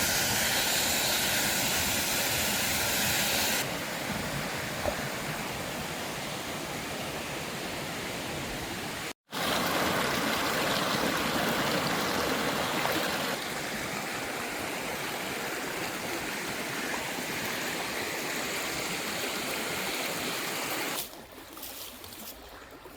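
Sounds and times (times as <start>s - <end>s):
waterfall rushing: 8.3s - 21.0s.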